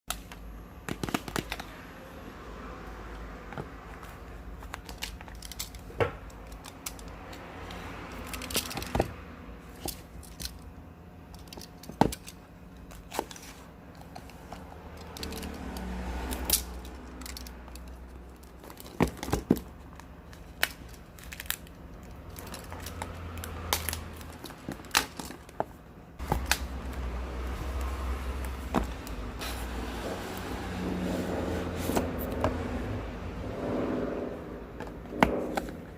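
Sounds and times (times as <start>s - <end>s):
low rumble: 26.7s - 35.9s.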